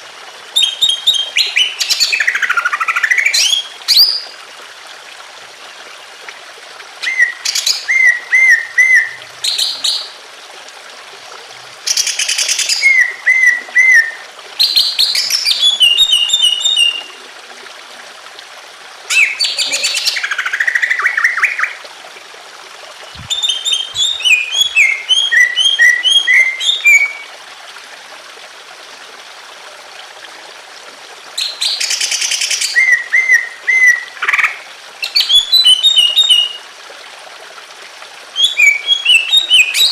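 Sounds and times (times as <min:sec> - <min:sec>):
water trickling: 0:00.0 - 0:39.9
bird singing chirps and whistles: 0:00.6 - 0:04.3, 0:07.0 - 0:10.1, 0:12.0 - 0:17.1, 0:19.1 - 0:21.7, 0:23.1 - 0:27.3, 0:31.4 - 0:36.6, 0:38.4 - 0:39.9.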